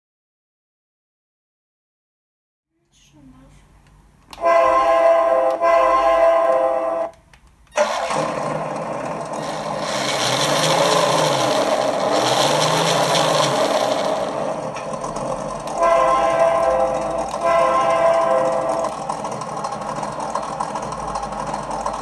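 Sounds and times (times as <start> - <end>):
electronic train horn blasts: 4.3 - 7.2, 7.8 - 8.5, 9.4 - 14.8, 15.6 - 20.4
simulated engine sound: 7.8 - 22.0.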